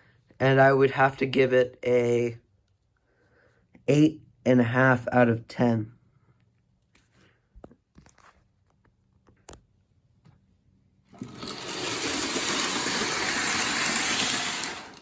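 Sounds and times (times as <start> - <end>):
toy train whirring on track: 11.2 - 15.0.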